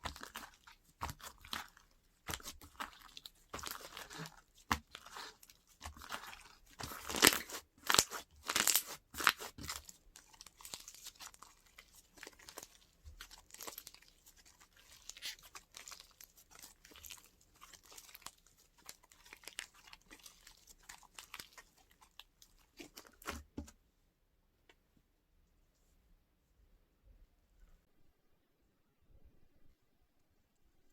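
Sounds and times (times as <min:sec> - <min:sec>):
slime crackling and popping: 0:00.0 - 0:23.4.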